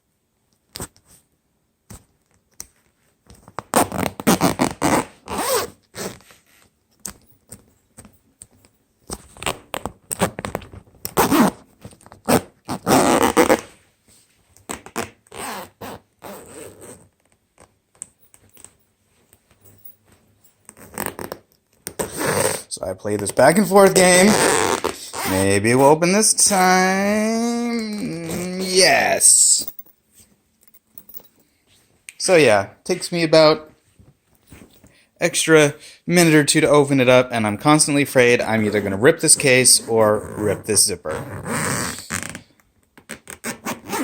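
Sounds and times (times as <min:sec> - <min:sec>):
zipper being pulled: 0:03.6 - 0:06.5, 0:09.4 - 0:13.8, 0:14.7 - 0:17.2, 0:20.6 - 0:22.7, 0:23.9 - 0:25.6, 0:27.6 - 0:29.8, 0:40.2 - 0:42.5, 0:43.1 - 0:44.0.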